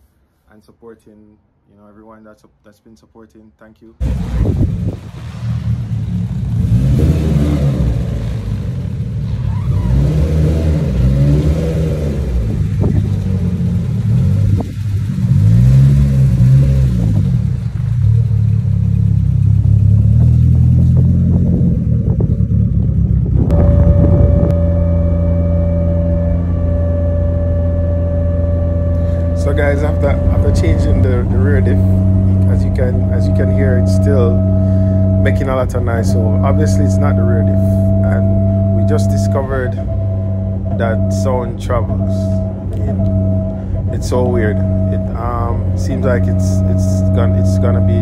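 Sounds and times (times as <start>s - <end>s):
car engine and drivetrain noise: 4.0s - 48.0s
drivetrain whine: 4.0s - 48.0s.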